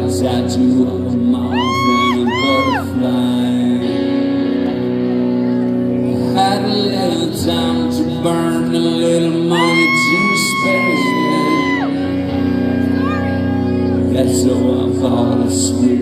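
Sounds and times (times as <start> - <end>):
high whoop: 1.5 - 2.9, 9.5 - 14.0.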